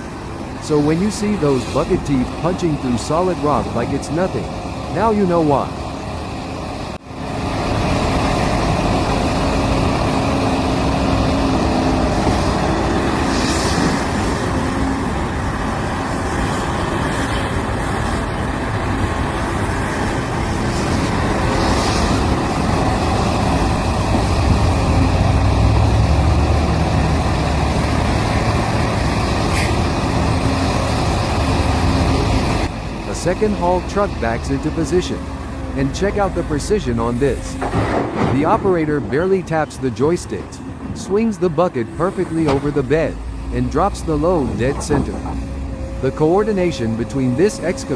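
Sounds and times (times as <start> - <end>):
heavy diesel machinery running: 0.0 - 47.9
deep rumble: 44.2 - 46.1.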